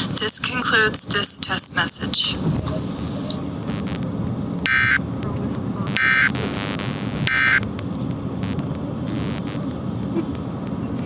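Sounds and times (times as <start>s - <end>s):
digital code data bursts: 4.7s - 5.0s, 5.9s - 7.6s.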